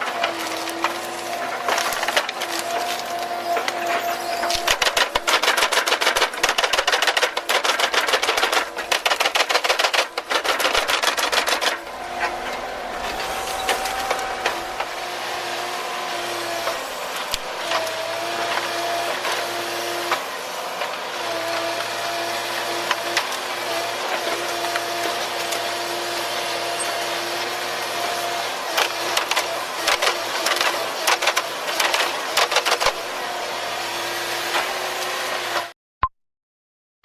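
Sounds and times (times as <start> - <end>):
wood being cut by machine: 0.0 - 35.7
machine engine whining: 10.1 - 18.9.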